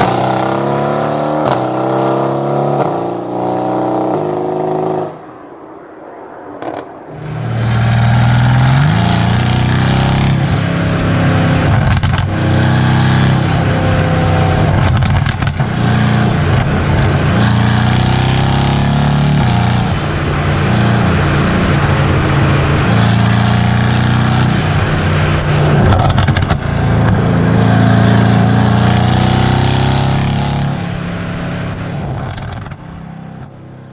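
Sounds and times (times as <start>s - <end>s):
car engine revving: 0.0s - 5.2s, 7.1s - 33.5s
exhaust cracks: 6.6s - 33.5s.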